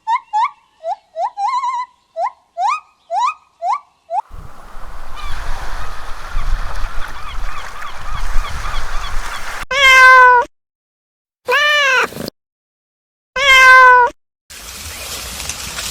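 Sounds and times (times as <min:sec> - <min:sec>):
loud drawn-out animal call: 0:04.3 - 0:09.6.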